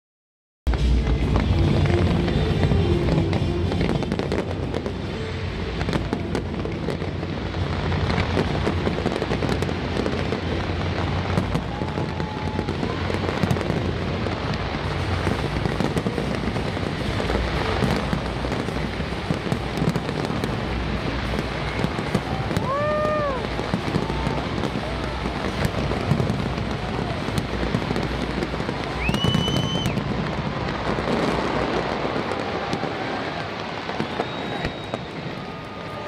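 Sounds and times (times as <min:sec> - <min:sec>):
fireworks bangs and crackles: 0:00.7 - 0:36.0.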